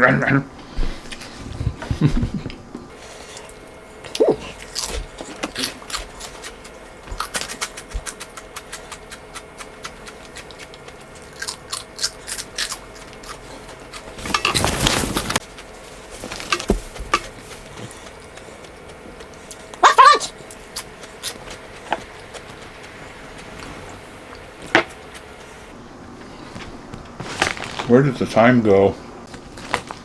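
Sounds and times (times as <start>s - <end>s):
pork rinds crunching: 3.3s - 23.7s.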